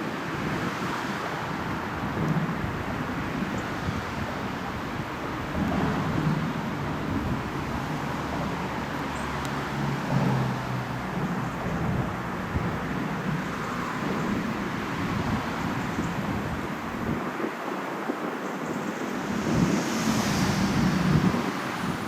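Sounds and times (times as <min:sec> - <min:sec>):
train rumbling past: 0:05.4 - 0:16.0, 0:18.8 - 0:22.0.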